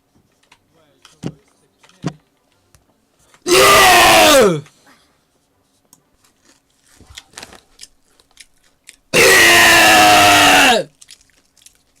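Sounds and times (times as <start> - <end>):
person burping loudly: 9.2 - 10.9.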